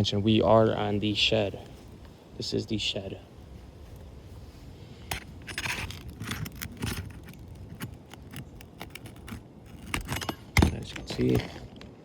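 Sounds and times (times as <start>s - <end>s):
metal tool scraping and clicking: 5.1s - 11.5s.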